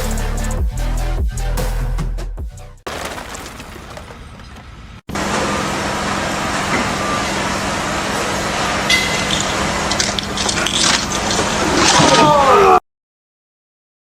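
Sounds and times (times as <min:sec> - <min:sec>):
heavy engine humming: 0:02.9 - 0:12.5.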